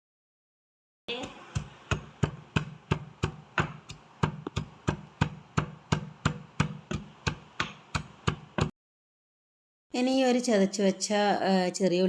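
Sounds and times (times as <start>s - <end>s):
dull pounding strokes: 1.1s - 8.7s.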